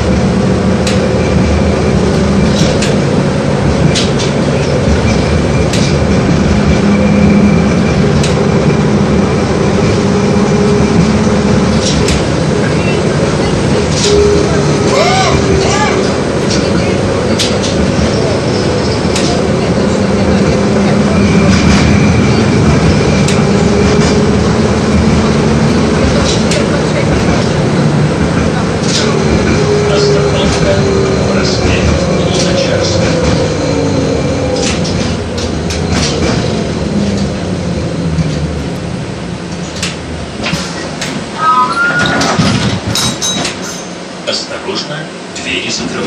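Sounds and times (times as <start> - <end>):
tram rumbling along track: 0.0 - 46.0
rising squeal: 41.3 - 42.4.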